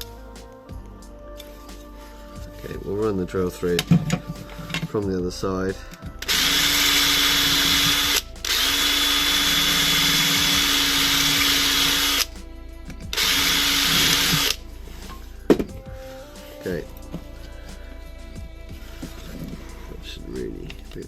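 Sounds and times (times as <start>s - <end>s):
electric drill running: 6.2s - 12.4s, 13.0s - 14.6s.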